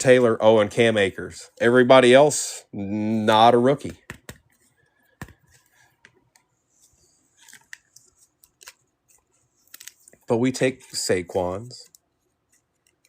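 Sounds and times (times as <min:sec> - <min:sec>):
trading cards clicking and tapping: 0:03.8 - 0:06.5.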